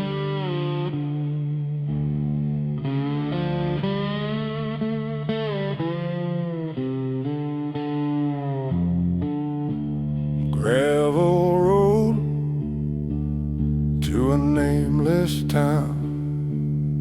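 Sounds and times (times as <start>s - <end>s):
distorted guitar bending notes: 0.0s - 17.0s.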